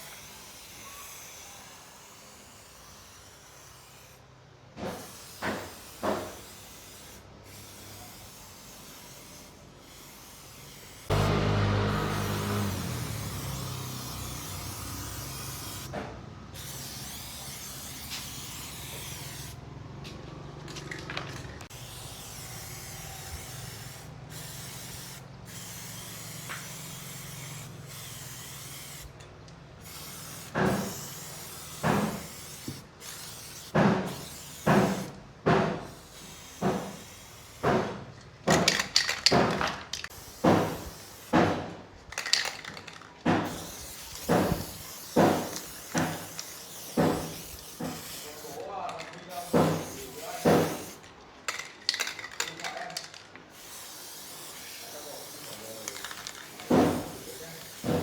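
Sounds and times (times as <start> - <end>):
steady hiss: 38.5 - 58.0.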